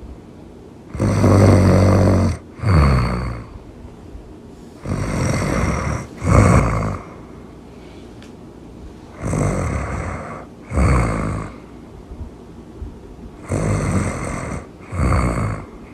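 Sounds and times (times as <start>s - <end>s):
loud snoring: 0.9s - 3.6s, 4.8s - 7.3s, 9.1s - 11.7s, 13.4s - 15.9s.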